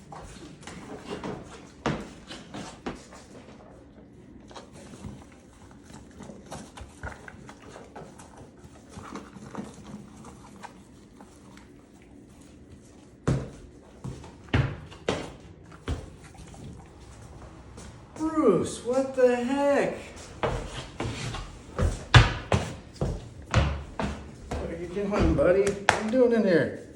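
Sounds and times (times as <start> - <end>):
cow hooves clopping on hard floor: 0.0 - 26.9.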